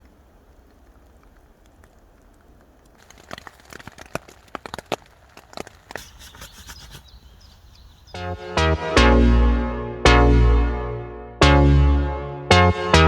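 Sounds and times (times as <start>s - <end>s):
sharp ticks and crackles: 0.0s - 7.1s
electronic music: 8.2s - 13.0s.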